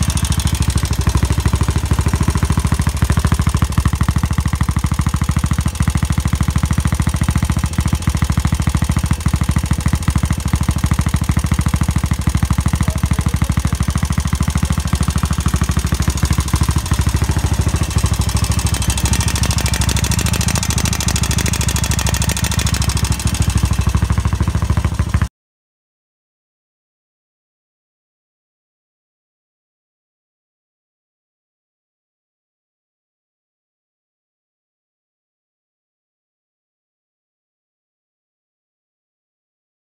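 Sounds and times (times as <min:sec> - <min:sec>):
single-cylinder engine running roughly: 0:00.0 - 0:25.3.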